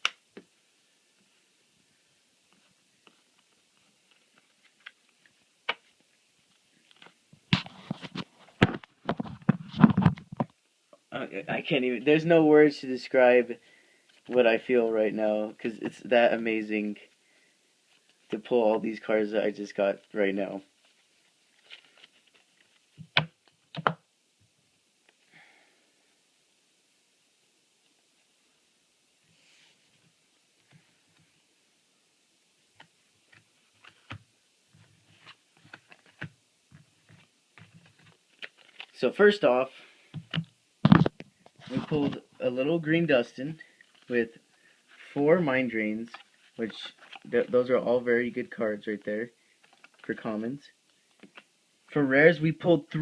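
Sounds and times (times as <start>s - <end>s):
cards shuffling and rustling: 2.5s - 10.5s, 17.9s - 24.0s, 32.8s - 39.2s, 40.2s - 51.5s
cards clicking and tapping: 23.0s - 24.0s.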